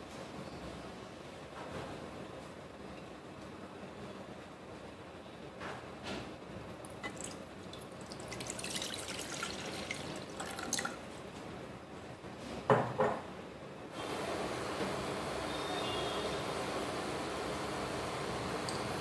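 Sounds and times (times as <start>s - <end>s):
water dripping and trickling: 6.8s - 11.0s.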